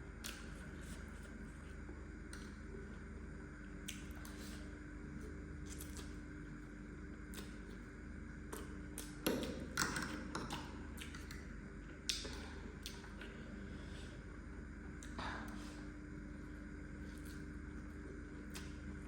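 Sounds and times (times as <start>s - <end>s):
person chewing noodles: 10.4s - 19.0s.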